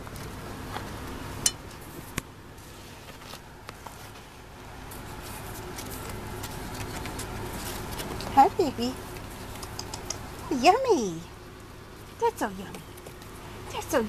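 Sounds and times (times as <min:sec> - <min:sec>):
food clicking against dish: 0:09.5 - 0:10.2.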